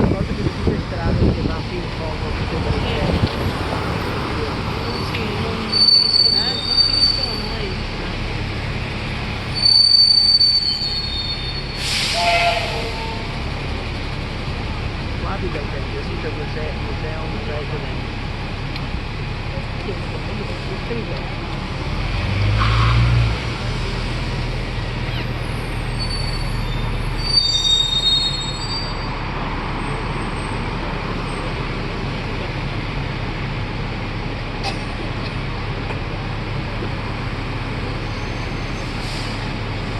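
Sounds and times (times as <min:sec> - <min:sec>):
bus engine hum: 0:00.0 - 0:39.9
road noise: 0:00.0 - 0:39.9
vehicle rumble: 0:00.0 - 0:39.9
brakes squealing: 0:00.1 - 0:13.5, 0:19.6 - 0:32.8, 0:34.6 - 0:39.9
bus brakes squealing: 0:03.0 - 0:07.9, 0:09.4 - 0:13.4, 0:25.0 - 0:29.2, 0:37.9 - 0:39.6
brake air hiss: 0:11.4 - 0:12.7.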